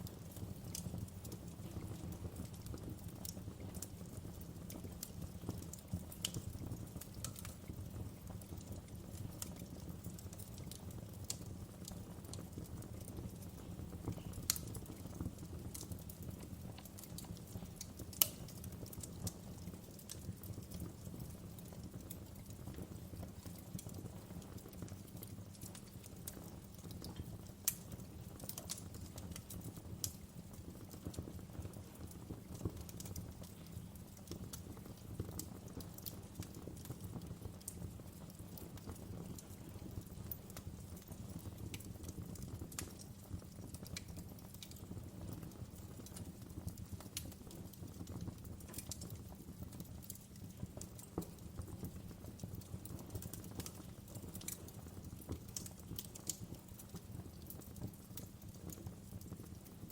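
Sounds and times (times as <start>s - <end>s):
fire low rumble: 0.0s - 59.9s
logs crackling in fireplace: 0.0s - 59.9s
sharp pops of fire: 15.5s - 19.4s.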